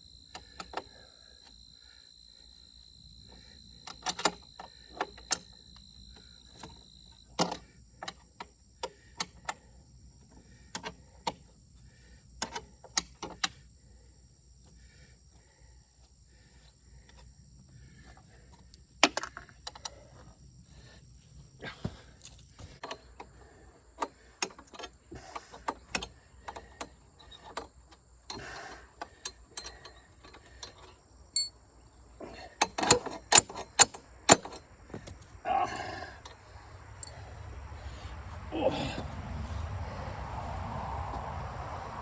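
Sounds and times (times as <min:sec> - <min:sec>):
metal parts and tools clanking: 0:29.2 - 0:31.6, 0:32.6 - 0:35.2.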